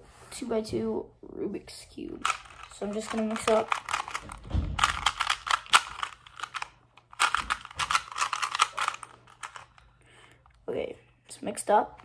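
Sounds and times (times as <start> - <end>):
puzzle cube clicking as turned: 2.2 - 9.8.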